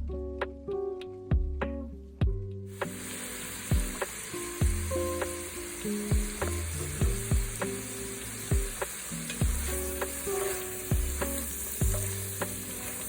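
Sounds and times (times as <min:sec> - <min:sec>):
electronic music with kick drum: 0:01.3 - 0:02.6, 0:03.7 - 0:05.3, 0:06.1 - 0:07.8, 0:08.5 - 0:10.2, 0:10.9 - 0:12.2
food sizzling in a pan: 0:02.7 - 0:13.0.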